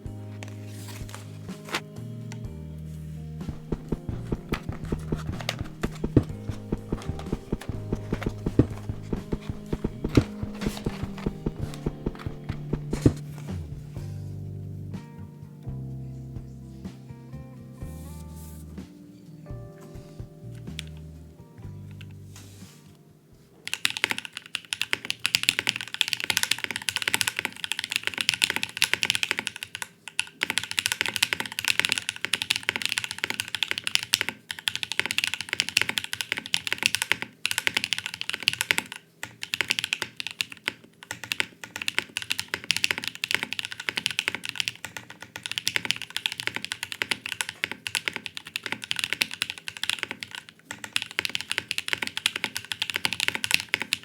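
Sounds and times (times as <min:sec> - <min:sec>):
fast mechanical keyboard typing: 0:03.5 - 0:13.4, 0:23.7 - 0:54.0.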